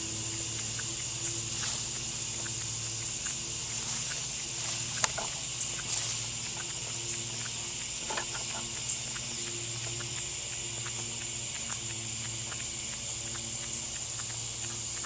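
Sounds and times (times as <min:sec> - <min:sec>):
small clicks and taps: 0:00.3 - 0:15.0.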